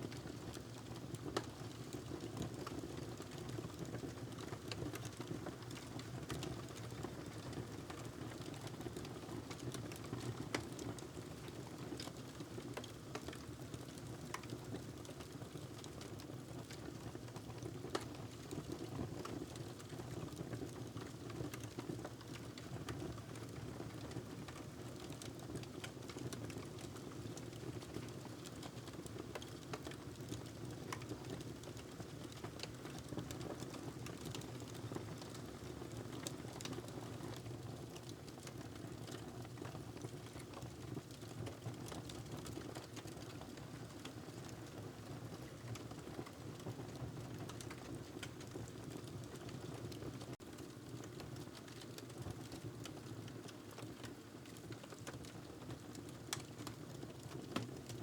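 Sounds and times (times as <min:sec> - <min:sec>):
wood fire crackling: 0:24.5 - 0:36.8, 0:50.5 - 0:58.0.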